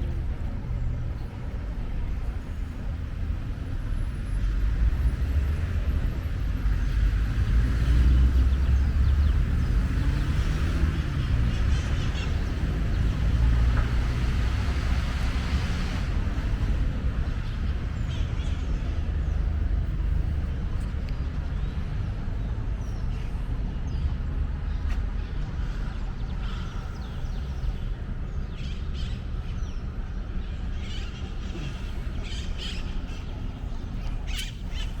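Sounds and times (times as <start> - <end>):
traffic rumble: 0.0 - 35.0
birds chirping: 24.7 - 35.0.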